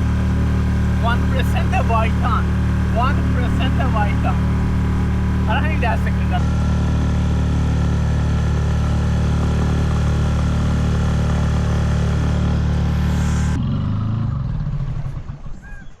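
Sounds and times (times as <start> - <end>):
motorboat engine running: 0.0 - 16.0.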